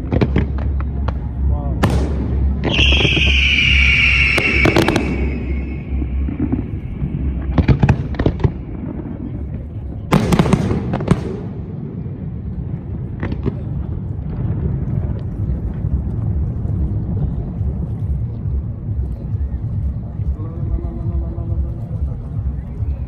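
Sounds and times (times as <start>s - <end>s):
firework bangs and crackling: 0.0s - 23.0s
low rumble: 0.0s - 23.0s
firework whistle falling: 2.6s - 8.1s.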